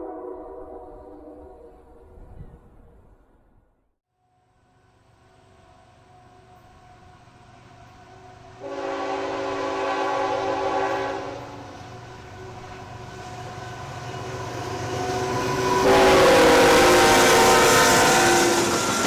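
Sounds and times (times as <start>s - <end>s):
train rumble: 4.9s - 19.0s
locomotive air horn blast: 8.6s - 11.8s, 15.6s - 19.0s.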